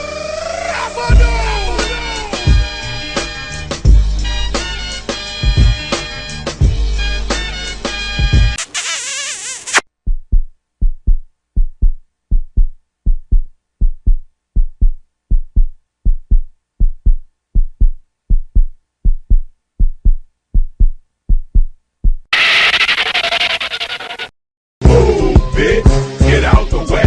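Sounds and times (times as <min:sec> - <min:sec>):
heartbeat thumps: 0:10.0 - 0:22.3.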